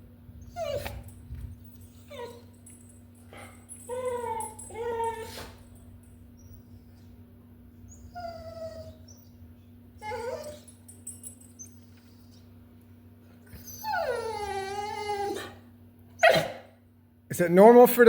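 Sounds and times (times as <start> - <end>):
dog whining and whimpering: 0.3 - 7.2, 7.8 - 12.6, 13.3 - 16.7.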